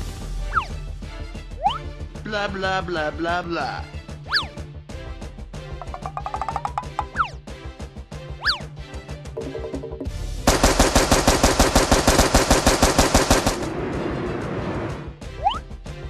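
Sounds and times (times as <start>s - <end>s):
rhythmic background music: 0.1s - 13.7s
machine-gun fire: 10.5s - 13.8s.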